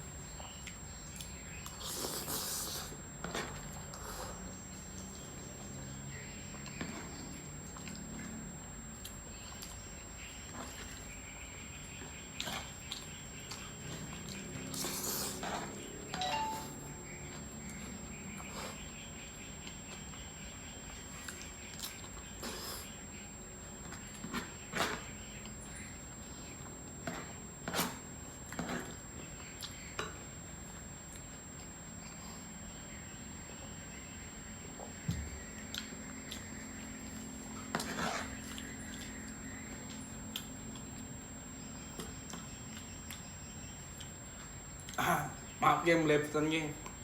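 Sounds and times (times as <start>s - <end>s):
low room hum: 0.0s - 47.0s
chewing and mouth sounds: 12.3s - 15.8s.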